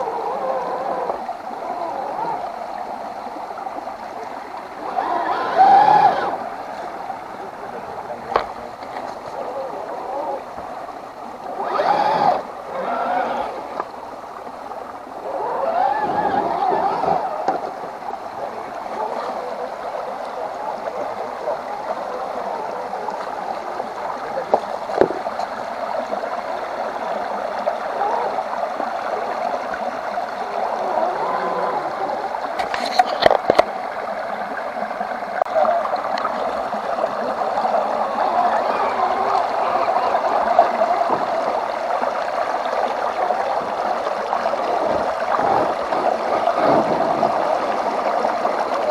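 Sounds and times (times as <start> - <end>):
water gurgling and churning: 0.0 - 48.9.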